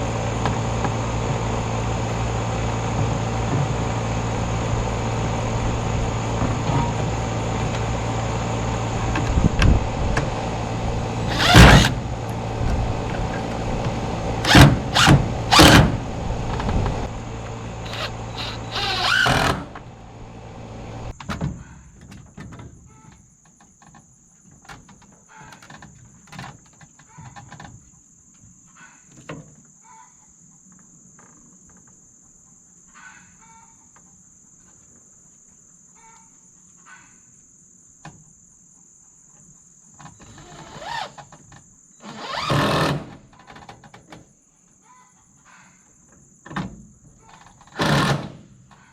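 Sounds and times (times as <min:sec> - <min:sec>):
motor running: 0:00.0 - 0:21.1
high insect buzz: 0:17.8 - 0:19.9, 0:40.2 - 0:42.8.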